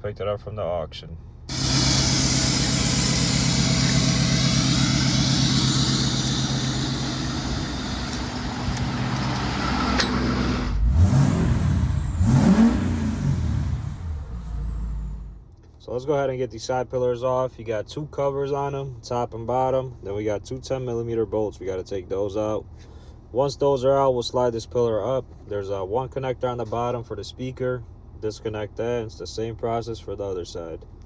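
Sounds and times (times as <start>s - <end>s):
pickup engine idling and revving: 1.5s - 15.4s.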